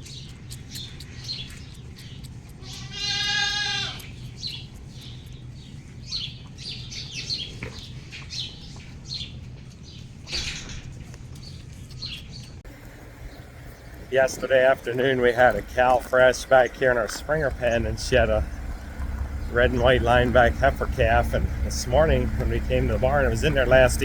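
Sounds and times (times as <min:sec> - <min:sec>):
low mechanical hum: 0:00.0 - 0:24.0
small birds chirping: 0:00.0 - 0:24.0
farm animal bleating: 0:02.5 - 0:04.2, 0:14.2 - 0:24.0.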